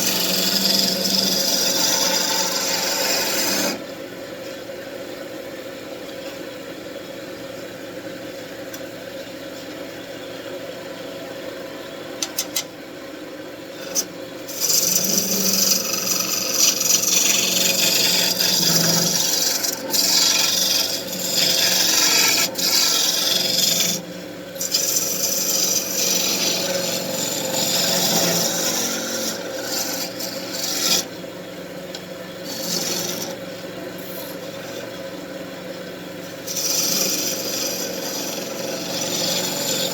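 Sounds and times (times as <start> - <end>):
turning tool cutting wood: 0.0 - 3.8, 13.8 - 31.1, 31.9 - 35.3, 36.1 - 39.9
wood lathe humming: 0.0 - 3.9, 13.7 - 39.9.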